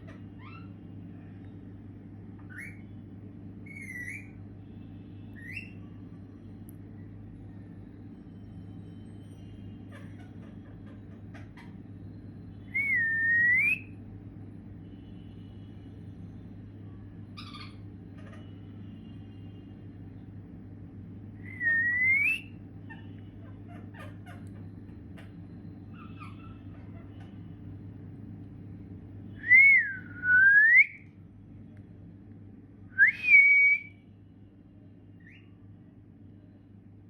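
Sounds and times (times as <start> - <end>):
steady low hum: 0.0 - 37.0
parrot whistling: 12.7 - 13.9, 21.4 - 22.5.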